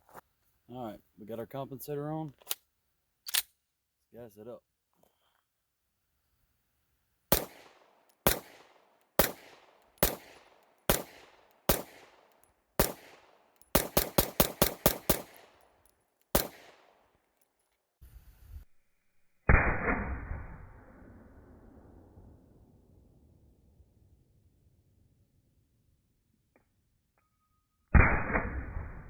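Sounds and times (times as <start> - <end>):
pistol shots: 7.3 - 15.6, 16.3 - 17.2.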